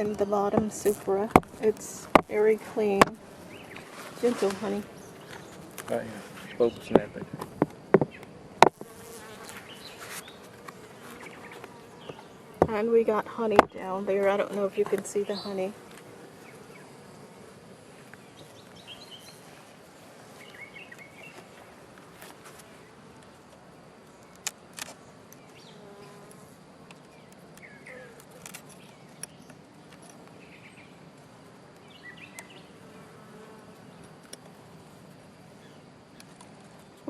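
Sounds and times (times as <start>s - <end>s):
honey bees buzzing: 0.0s - 24.1s, 25.0s - 29.2s, 31.8s - 35.8s
sharp clicks and knocks: 6.9s - 8.9s.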